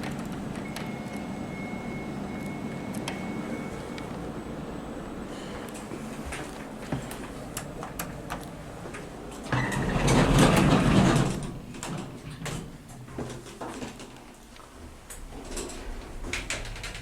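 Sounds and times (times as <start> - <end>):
steady low hum: 0.0 - 9.5
lift doors sliding: 7.6 - 14.0.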